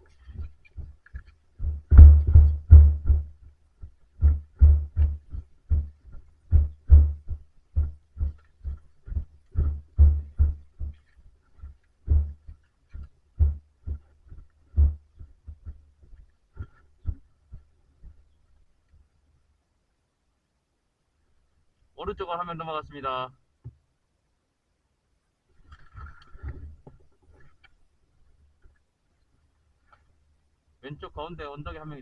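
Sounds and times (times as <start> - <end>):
running footsteps: 0.0 - 18.2.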